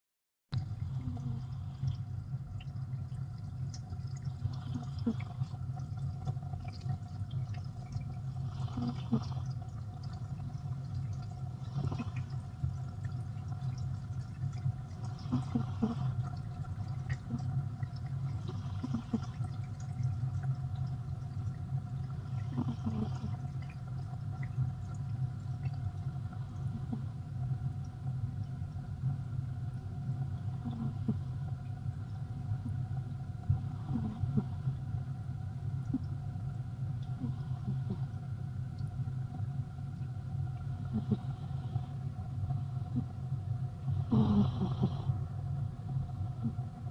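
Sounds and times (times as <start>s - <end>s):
steady low hum: 0.5s - 46.9s
pet snoring: 0.9s - 1.9s, 4.4s - 5.5s, 8.4s - 9.6s, 11.6s - 12.3s, 15.1s - 16.2s, 18.4s - 19.4s, 22.2s - 23.5s, 30.5s - 31.4s, 33.6s - 34.7s, 37.2s - 38.1s, 40.8s - 41.8s, 44.0s - 45.2s.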